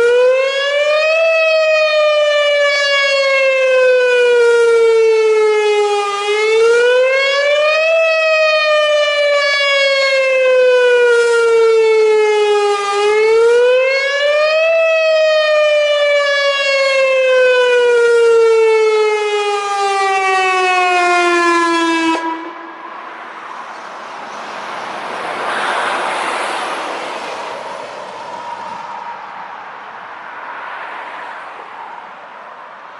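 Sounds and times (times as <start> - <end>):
warning siren wailing: 0.0 - 23.6, 25.3 - 32.4
passing vehicle: 1.2 - 32.9.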